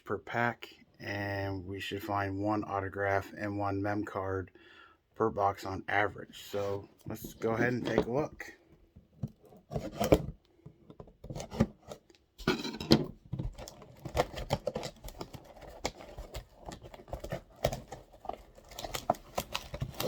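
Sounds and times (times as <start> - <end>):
wrap and cardboard tearing: 13.3 - 20.0.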